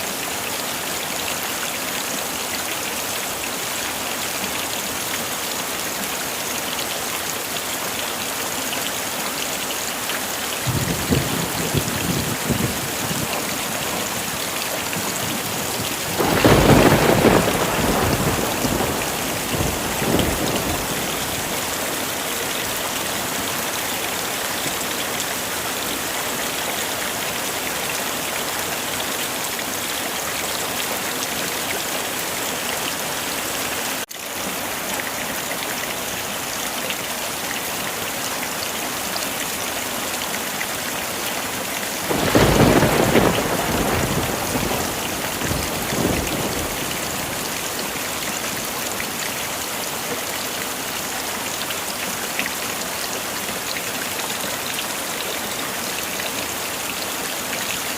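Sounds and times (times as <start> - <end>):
heavy rain: 0.0 - 57.9
thunder rumbling: 10.6 - 21.8, 42.1 - 47.6.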